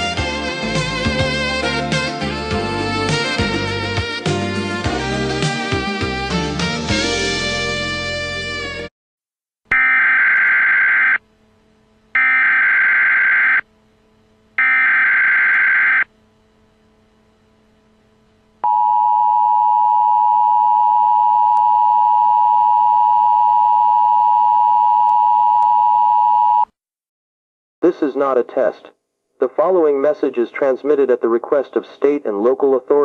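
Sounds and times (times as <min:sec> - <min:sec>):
harsh digital data bursts: 0:12.2 - 0:13.6, 0:14.6 - 0:16.1.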